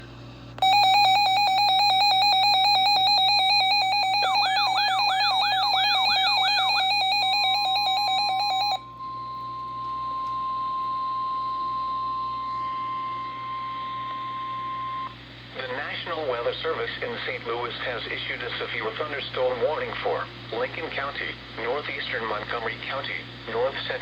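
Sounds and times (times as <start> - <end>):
rapid alarm beeps: 0.6 - 8.8
steady warning alarm tone: 0.6 - 14.9.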